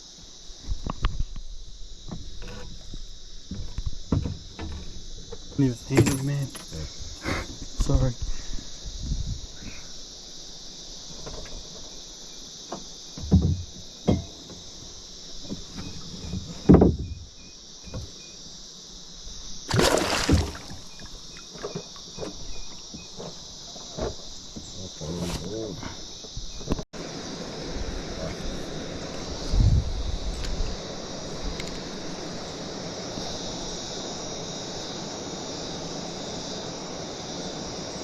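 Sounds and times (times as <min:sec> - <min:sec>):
insects droning: 0:00.0 - 0:38.0
dull thumps and knocks: 0:02.0 - 0:06.7, 0:12.7 - 0:14.8, 0:15.4 - 0:18.2, 0:19.7 - 0:25.6.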